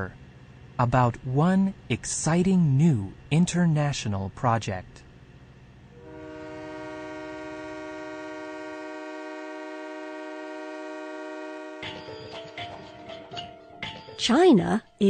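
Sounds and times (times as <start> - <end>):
train horn chord: 5.9 - 12.2.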